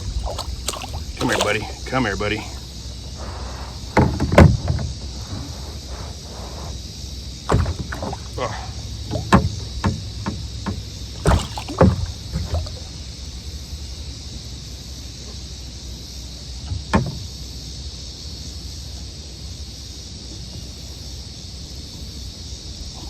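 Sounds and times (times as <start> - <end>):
steady low rumble: 0.0 - 4.0
knocks on a kayak: 9.2 - 12.1.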